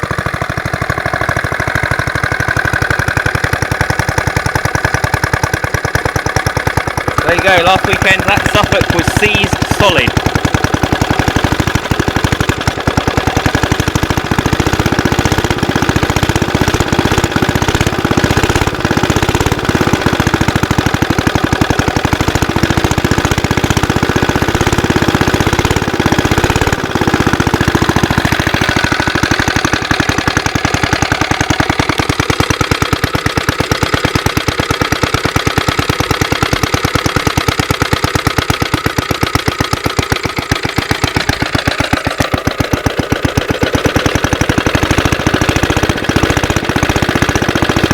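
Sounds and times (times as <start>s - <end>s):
stationary engine idling: 0.0s - 47.9s.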